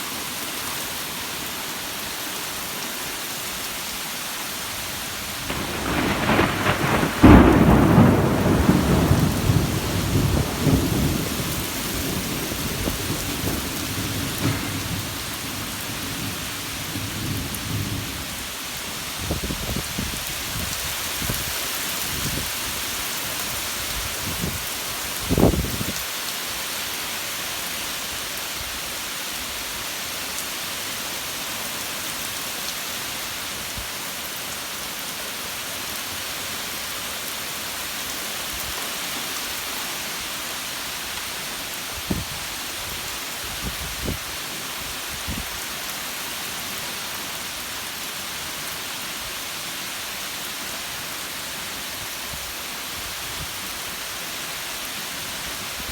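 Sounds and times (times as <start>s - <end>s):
steady rain: 0.0s - 55.9s
sharp thunderclap: 5.5s - 18.0s
rolling thunder: 5.5s - 18.2s.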